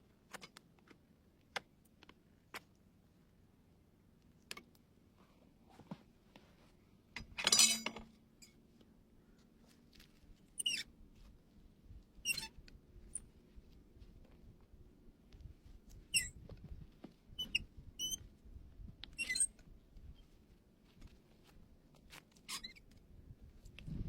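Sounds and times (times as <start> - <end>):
squeaky scraping strokes: 10.6 - 10.9, 12.2 - 13.2, 17.4 - 18.2, 19.2 - 19.6, 22.4 - 22.9.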